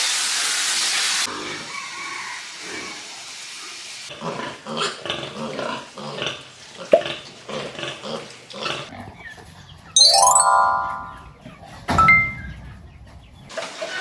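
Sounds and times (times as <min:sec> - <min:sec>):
pigs grunting: 0:04.1 - 0:09.2.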